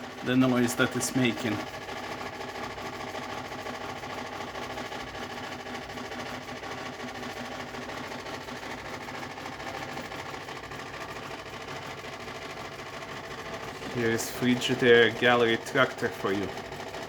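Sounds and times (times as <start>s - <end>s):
refrigerator humming: 0.0s - 17.0s.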